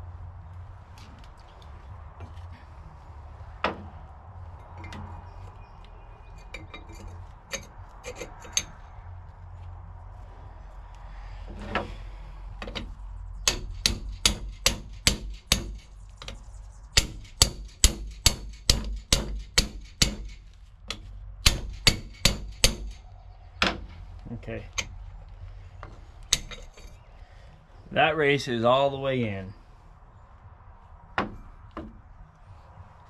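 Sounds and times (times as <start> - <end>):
hammer striking metal: 13.4 - 15.8, 17.0 - 20.4, 21.4 - 23.0.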